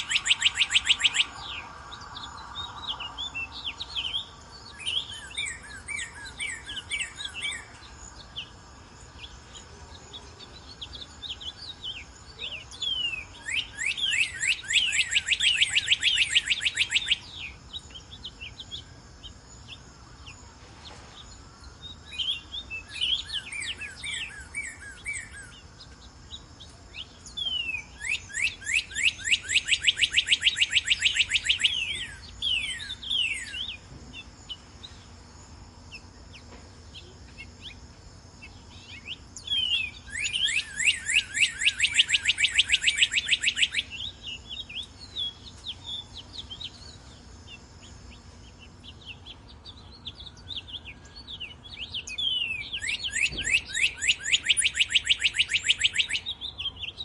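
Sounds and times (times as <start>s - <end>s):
bird singing slurred whistles: 0.0s - 8.6s, 10.1s - 18.9s, 21.8s - 25.7s, 27.0s - 33.9s, 38.4s - 47.2s, 48.8s - 57.0s.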